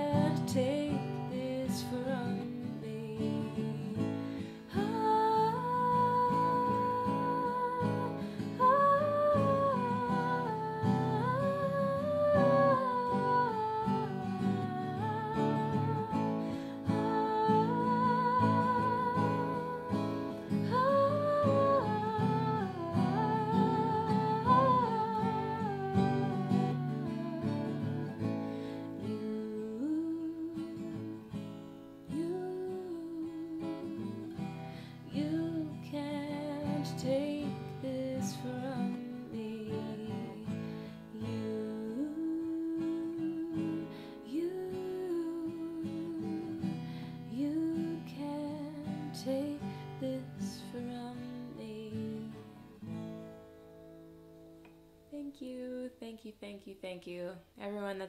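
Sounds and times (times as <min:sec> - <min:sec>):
acoustic guitar strummed: 0:00.0 - 0:29.0
woman singing wordless melody: 0:00.0 - 0:53.0, 0:55.1 - 0:58.0.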